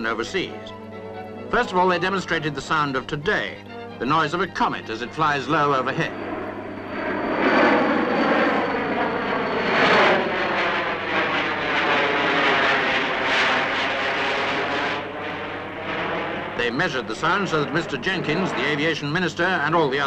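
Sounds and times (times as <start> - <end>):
jet airliner flying overhead: 0.0 - 20.0.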